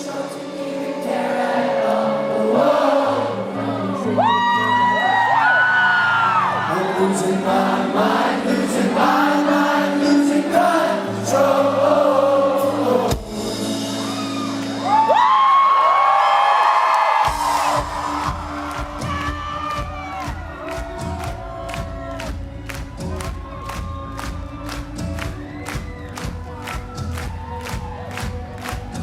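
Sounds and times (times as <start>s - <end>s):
man singing: 0.0s - 5.2s, 6.3s - 14.5s
audience noise: 0.0s - 29.0s
live rock band playing: 7.6s - 15.8s, 17.2s - 29.0s.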